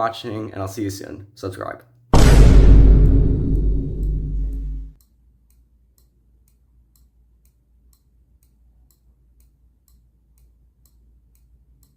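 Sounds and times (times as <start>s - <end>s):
low hum: 2.2s - 5.0s
faint steady ticking: 5.0s - 11.9s.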